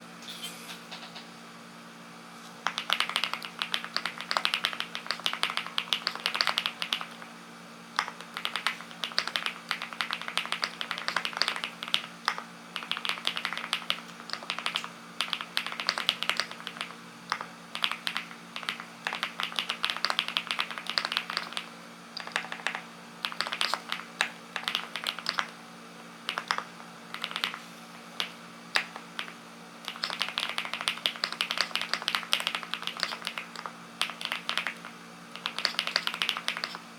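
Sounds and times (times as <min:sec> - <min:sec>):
mechanical keyboard typing: 0:02.6 - 0:07.3, 0:08.0 - 0:25.6, 0:26.3 - 0:27.6, 0:28.2 - 0:36.8.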